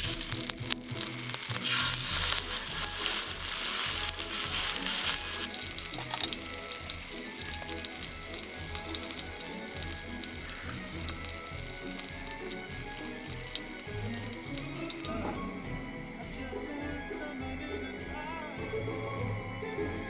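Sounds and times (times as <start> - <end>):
food sizzling in a frying pan: 0.0 - 15.5
background music: 0.0 - 20.0.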